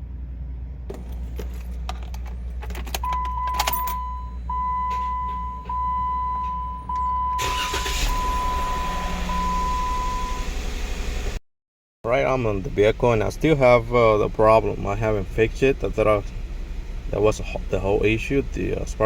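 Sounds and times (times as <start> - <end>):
vehicle hum: 0.0 - 11.4, 12.1 - 19.0
vehicle warning chime: 2.9 - 10.5.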